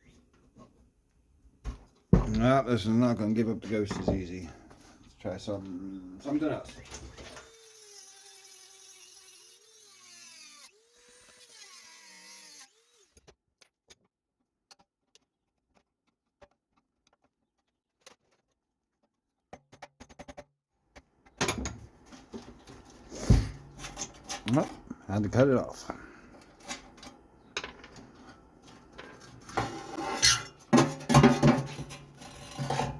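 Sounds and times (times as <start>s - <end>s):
power tool motor whirring: 7.2s - 13.2s.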